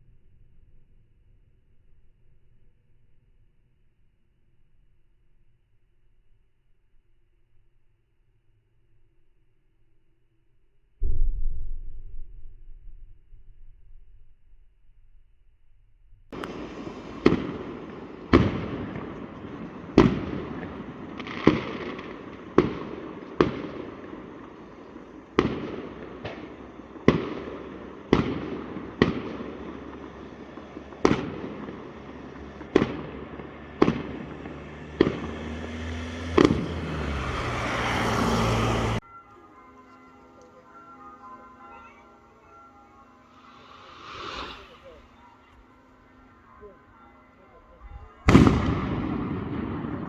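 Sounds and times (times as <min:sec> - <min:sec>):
fireworks bangs: 0:16.4 - 0:50.0
fireworks crackling: 0:16.4 - 0:50.0
rising rushing noise: 0:41.5 - 0:47.4.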